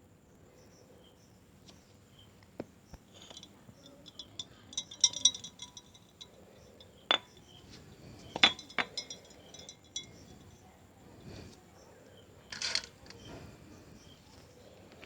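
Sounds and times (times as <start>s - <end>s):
clinking and tapping on glass: 3.1s - 7.6s, 8.2s - 10.4s.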